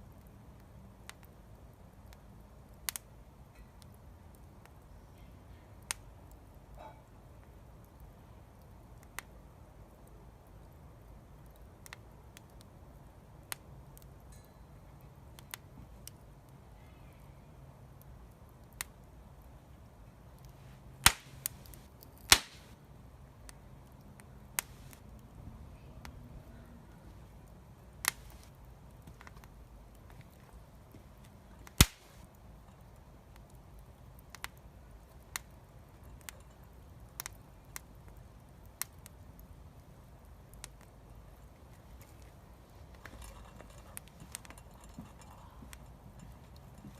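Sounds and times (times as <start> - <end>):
wood fire crackling: 0.0 - 46.9
fire pops: 2.0 - 4.8, 5.8 - 6.5, 11.4 - 14.3, 20.3 - 22.8, 23.4 - 25.3, 27.3 - 39.5, 40.2 - 46.9.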